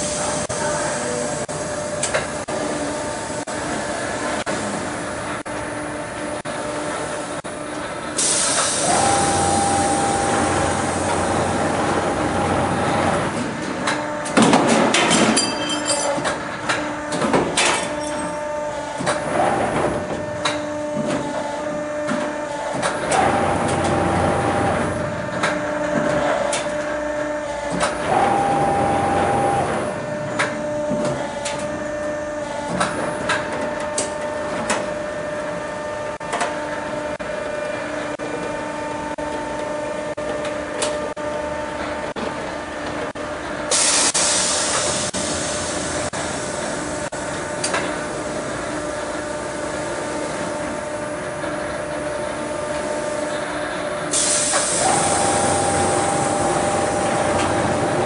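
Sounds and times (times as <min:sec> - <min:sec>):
machine hum: 0:00.0 - 0:14.4, 0:18.3 - 0:43.7, 0:45.0 - 0:58.0
loud burst of hiss: 0:08.2 - 0:09.6, 0:43.7 - 0:46.7, 0:54.1 - 0:57.0.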